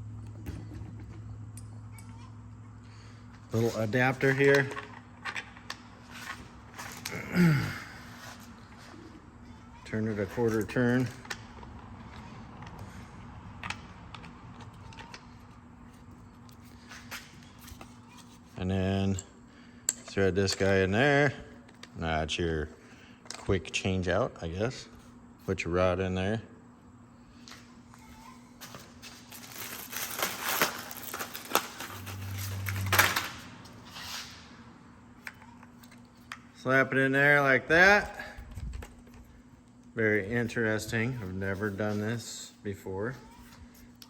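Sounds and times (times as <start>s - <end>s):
low hum: 31.0s - 35.1s.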